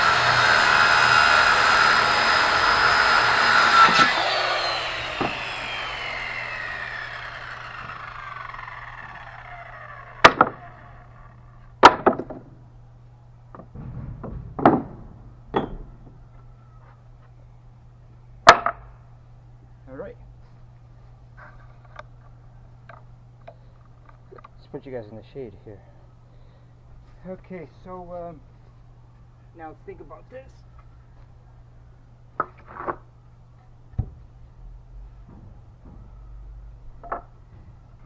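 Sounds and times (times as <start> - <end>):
saw blade winding down: 0.0 - 11.5
electric saw running: 0.0 - 11.6
sharp knocks: 13.6 - 16.1.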